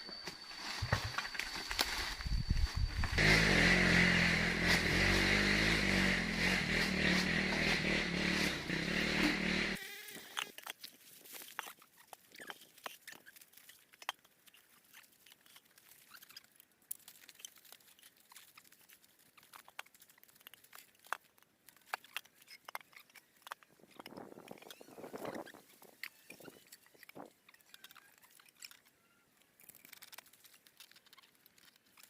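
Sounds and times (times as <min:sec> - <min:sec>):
rustling: 0:00.0 - 0:03.2, 0:10.1 - 0:32.0
faint crackles and clicks: 0:10.1 - 0:32.0.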